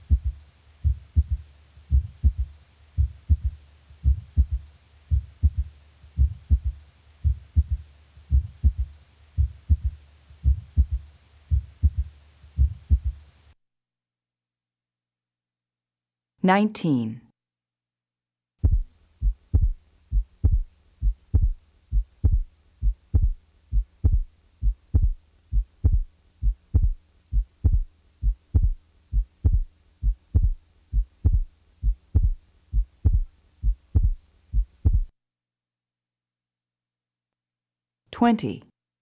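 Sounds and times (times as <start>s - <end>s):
heartbeat lub-dub: 0.0s - 13.2s, 18.6s - 35.1s
faint steady hum: 0.0s - 13.6s, 18.6s - 35.1s.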